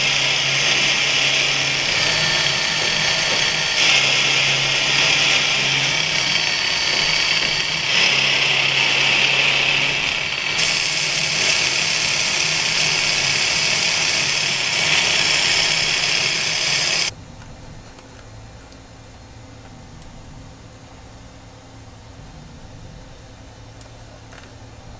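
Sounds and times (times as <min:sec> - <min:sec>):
milling machine cutting steel: 0:00.0 - 0:17.1.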